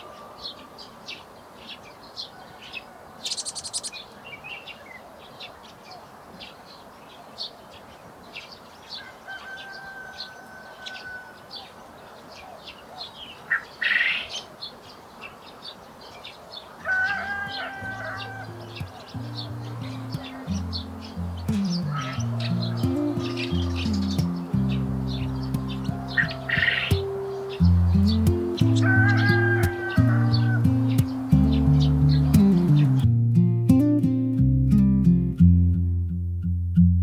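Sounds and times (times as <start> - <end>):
birds chirping: 0.0 - 33.1
soft background music: 17.0 - 35.9.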